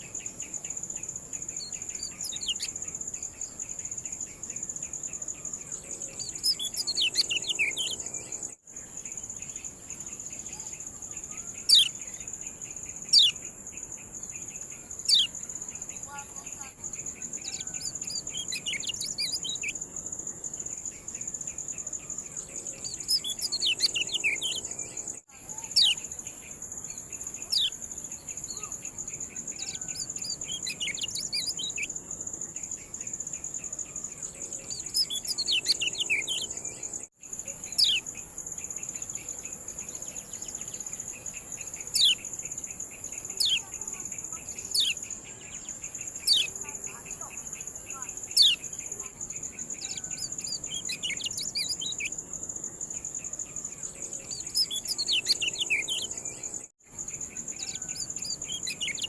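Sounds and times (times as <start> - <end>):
bird chirps: 0.0 - 59.0
high insect-like trill: 0.0 - 59.0.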